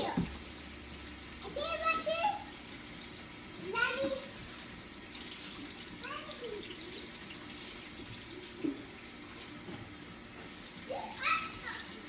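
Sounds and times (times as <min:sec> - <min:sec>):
tap running into sink: 0:00.0 - 0:00.5, 0:03.8 - 0:10.8.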